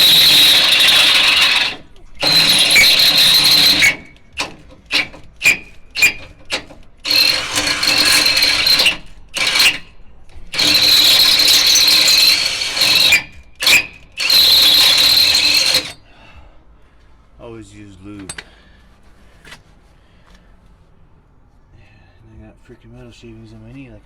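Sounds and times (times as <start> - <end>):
electric drill boring into steel: 0.0 - 9.9, 10.5 - 16.0.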